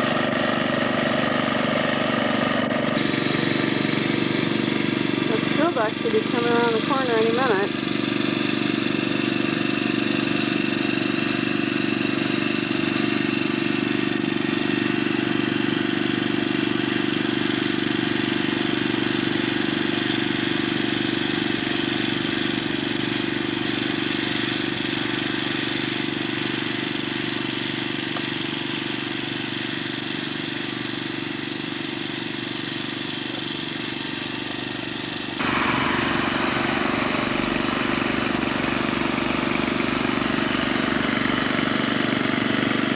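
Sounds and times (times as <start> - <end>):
snow-clearing machine engine running: 0.0 - 42.9.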